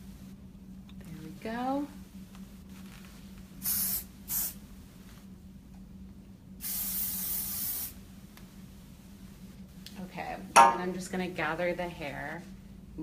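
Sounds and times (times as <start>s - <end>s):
hairspray can spraying: 3.6s - 4.6s, 6.6s - 8.0s.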